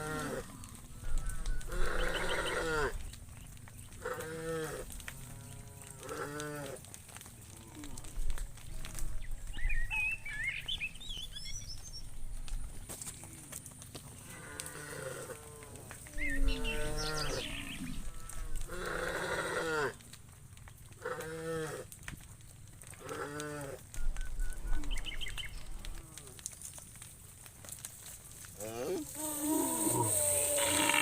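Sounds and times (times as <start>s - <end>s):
cattle mooing: 0.0s - 3.0s, 4.0s - 6.8s, 14.3s - 20.0s, 28.6s - 31.0s.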